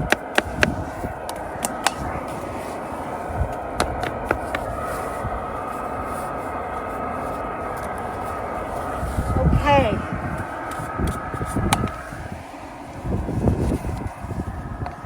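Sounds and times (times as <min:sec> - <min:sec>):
snow brush knocking and scraping: 0:00.0 - 0:09.3
steady rumbling noise: 0:00.0 - 0:15.0.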